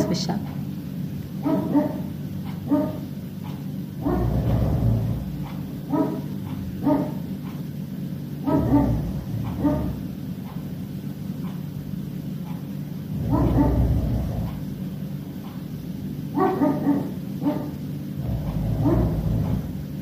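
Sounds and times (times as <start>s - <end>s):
low drone: 4.0s - 7.3s.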